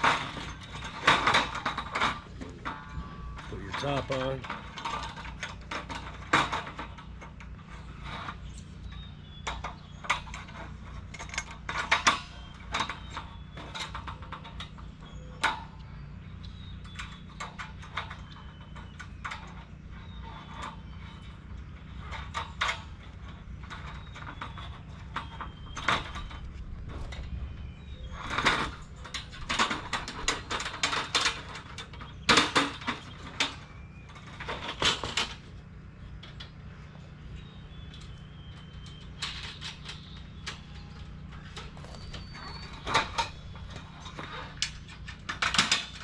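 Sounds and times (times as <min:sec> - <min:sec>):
metal panels clicking and clanking: 0:00.0 - 0:46.0.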